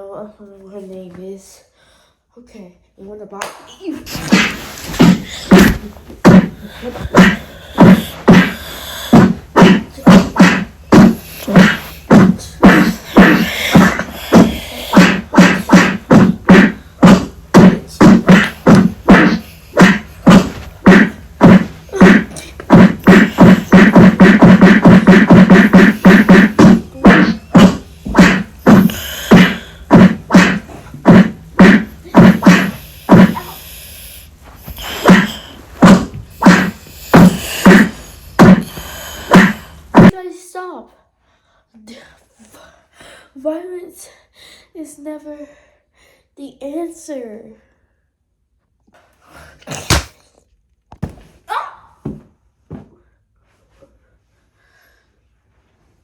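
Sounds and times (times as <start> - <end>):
punch hits: 4.3 - 33.5, 35.0 - 38.7.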